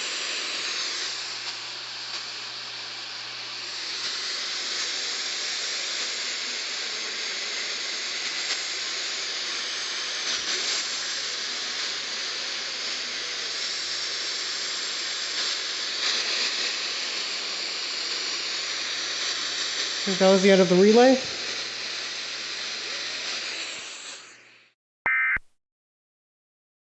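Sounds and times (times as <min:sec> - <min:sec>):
radio static hiss: 0:25.1 - 0:25.5.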